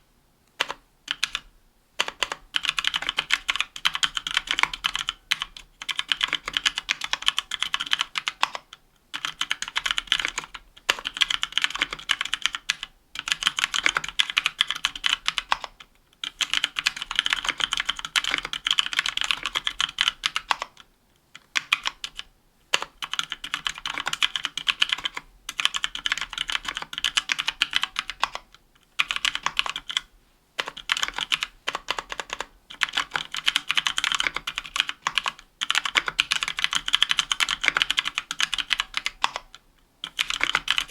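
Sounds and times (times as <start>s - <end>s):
mechanical keyboard typing: 0.6s - 40.9s.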